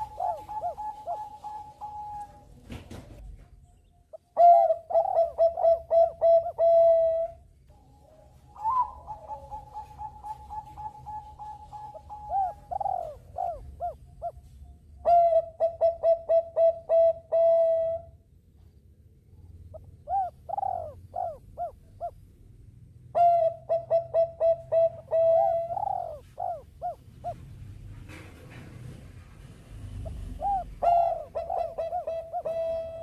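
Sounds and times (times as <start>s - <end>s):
dove cooing in staccato notes: 0.0s - 2.5s, 4.1s - 7.5s, 8.5s - 18.1s, 19.7s - 22.2s, 23.1s - 27.5s, 30.0s - 33.0s.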